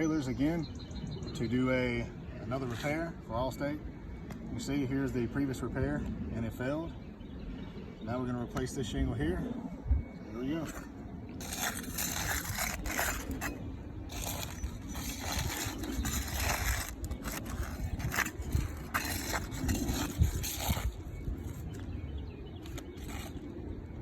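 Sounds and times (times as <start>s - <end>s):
roof shingles scraping: 10.7s - 21.9s, 22.6s - 23.5s.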